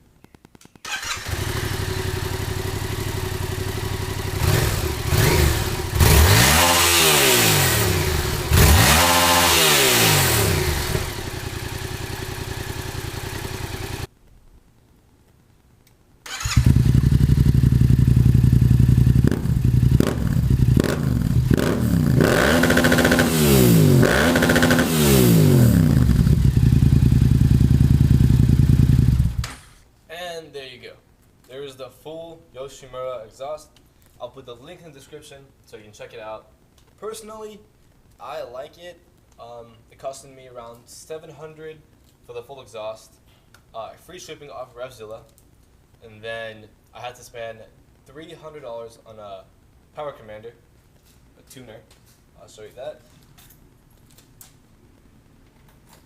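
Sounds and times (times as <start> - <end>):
motorcycle engine revving: 0.9 - 14.1, 16.3 - 29.5.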